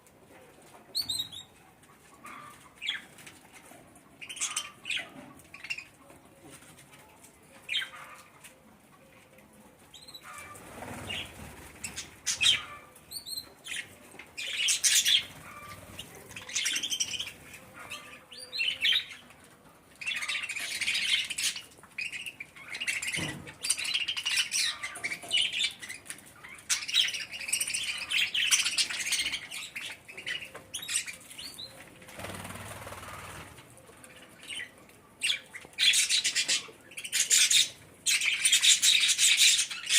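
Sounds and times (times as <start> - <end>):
budgerigars chirping: 4.2 - 5.9, 10.0 - 19.2, 20.0 - 31.7, 34.4 - 39.9
wing flapping: 32.1 - 33.6.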